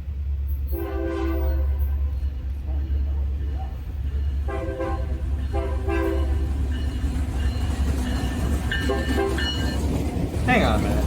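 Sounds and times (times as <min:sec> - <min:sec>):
low rumble of train: 0:00.0 - 0:11.0
locomotive air horn blasts: 0:00.7 - 0:02.2, 0:04.5 - 0:06.4.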